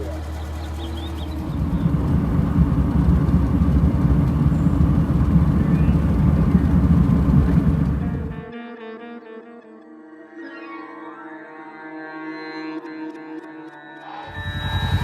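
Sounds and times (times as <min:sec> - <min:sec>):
engine low rumble: 0:00.0 - 0:08.5, 0:14.3 - 0:15.0.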